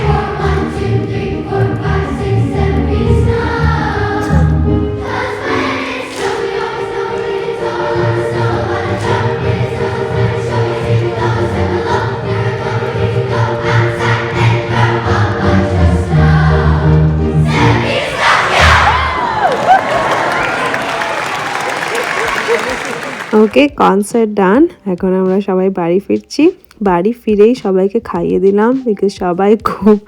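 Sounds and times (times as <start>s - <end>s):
sustained low accompaniment notes: 0.0s - 19.1s
choir singing: 0.0s - 23.3s.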